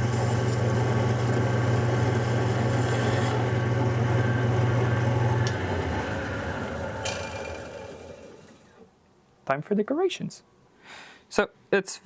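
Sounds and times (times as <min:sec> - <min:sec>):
wood lathe motor hum: 0:00.0 - 0:08.9
lathe switch click: 0:05.4 - 0:05.6.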